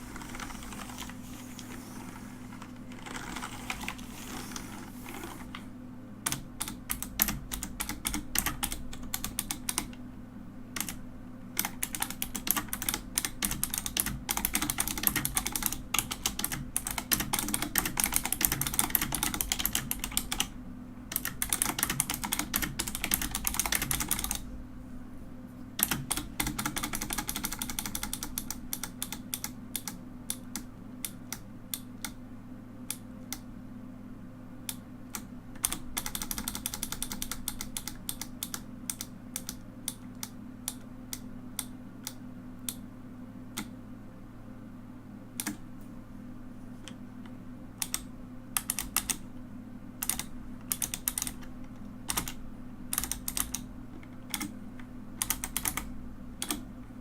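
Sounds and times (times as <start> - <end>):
low hum: 0.0 - 6.6
mechanical keyboard keys clacking: 6.3 - 10.0, 11.6 - 20.5, 21.1 - 24.4, 25.8 - 30.6, 35.2 - 40.8, 47.8 - 49.2, 50.0 - 51.5, 52.1 - 53.6, 55.2 - 56.7.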